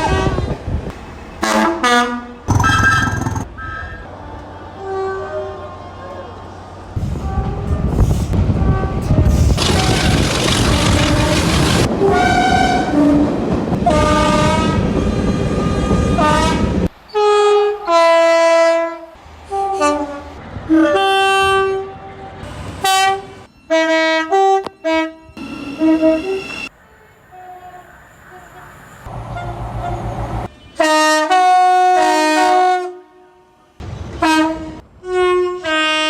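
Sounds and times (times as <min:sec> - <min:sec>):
train horn blasts: 0:01.4 - 0:02.5, 0:04.7 - 0:05.7, 0:12.0 - 0:26.5, 0:29.3 - 0:36.0
train rumbling and clattering: 0:06.3 - 0:16.9, 0:33.8 - 0:35.7.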